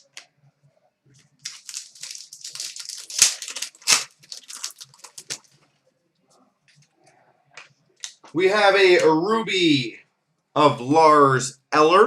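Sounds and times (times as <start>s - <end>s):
foil wrapper crinkling: 1.2s - 5.7s
sharp wrapper rips: 1.4s - 5.5s.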